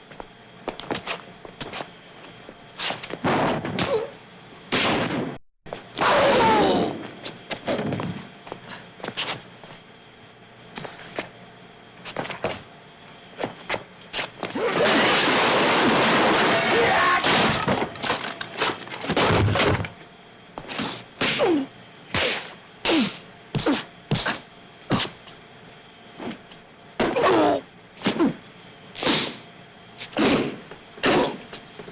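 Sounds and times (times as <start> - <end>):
loud crash: 14.7 - 19.9.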